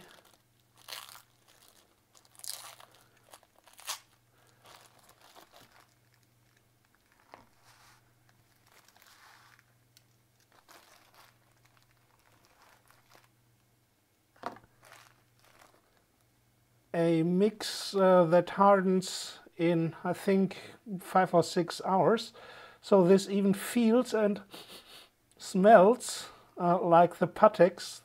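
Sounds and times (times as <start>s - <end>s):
crinkling packaging handling: 0.0s - 13.7s, 14.4s - 16.3s.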